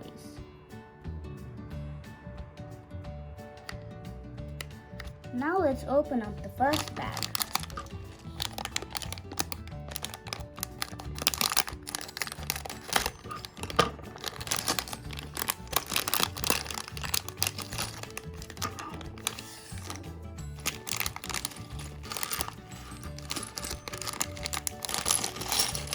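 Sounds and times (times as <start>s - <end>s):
background music: 0.0s - 25.9s
plastic bricks clicking and clattering: 6.6s - 25.9s.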